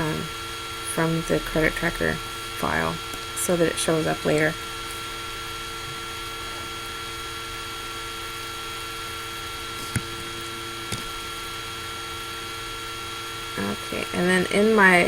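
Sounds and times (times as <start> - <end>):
laptop cooling fan humming: 0.0 - 15.0.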